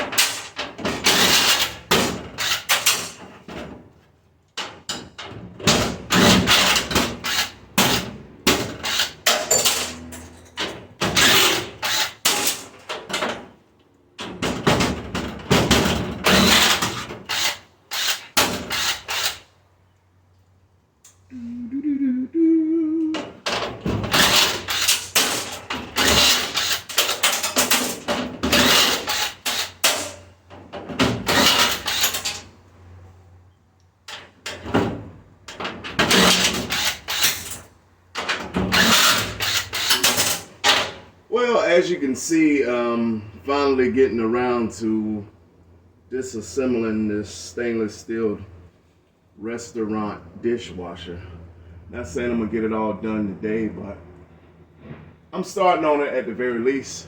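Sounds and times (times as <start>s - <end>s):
sheet metal thunks and clattering: 0.0s - 3.9s, 14.2s - 17.3s, 23.3s - 32.4s.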